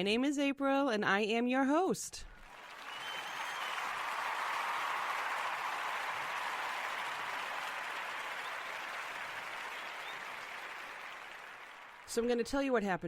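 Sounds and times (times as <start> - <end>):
applause: 2.4 - 12.4.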